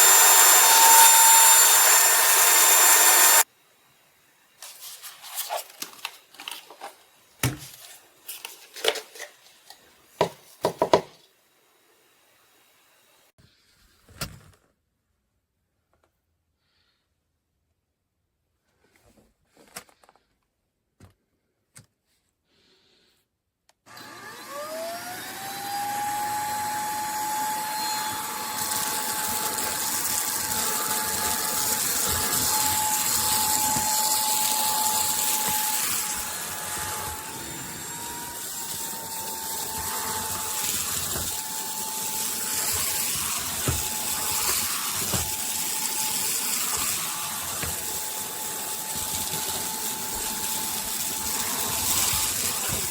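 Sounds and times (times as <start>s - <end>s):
vacuum cleaner motor whine: 0.0s - 3.5s, 23.9s - 52.9s.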